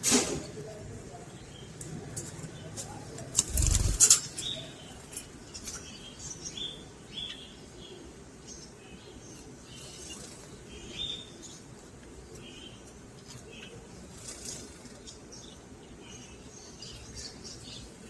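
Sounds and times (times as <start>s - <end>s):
lovebirds chirping: 2.5s - 18.0s.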